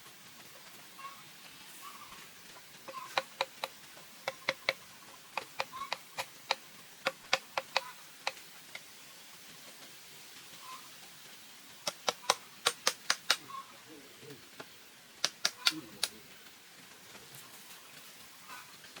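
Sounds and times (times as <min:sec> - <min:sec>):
sharp knocks on bamboo: 0:05.4 - 0:08.4, 0:11.9 - 0:13.4, 0:15.2 - 0:16.2.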